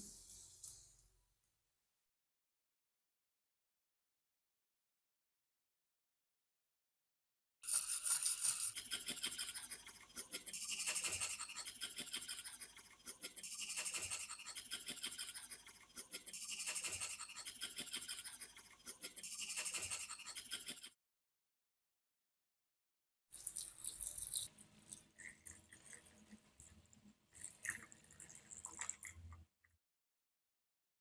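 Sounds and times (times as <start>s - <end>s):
scratchy scrubbing strokes: 7.7s - 20.9s.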